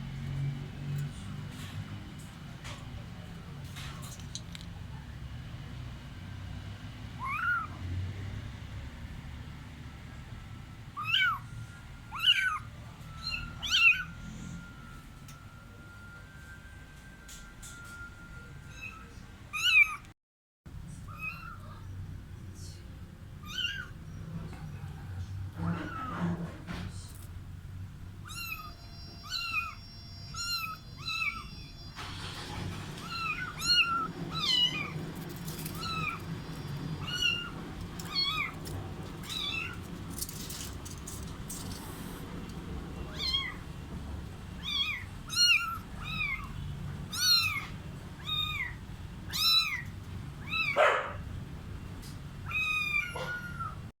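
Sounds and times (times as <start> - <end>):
cats meowing: 7.2 - 7.8, 11.0 - 11.5, 12.1 - 14.9, 18.7 - 20.1, 21.0 - 21.9, 23.4 - 24.0, 25.6 - 26.6, 28.2 - 40.6, 43.0 - 43.7, 44.5 - 51.3, 52.0 - 53.9.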